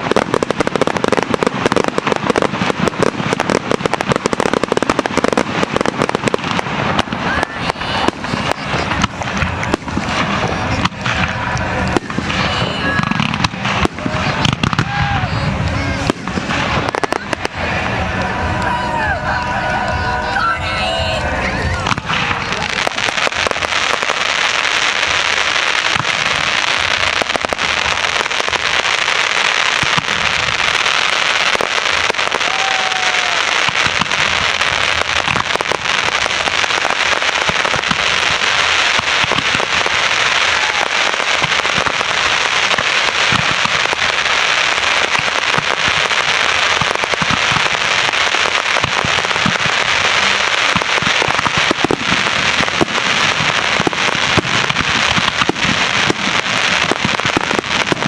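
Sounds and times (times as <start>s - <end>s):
fireworks crackling: 0.0s - 58.0s.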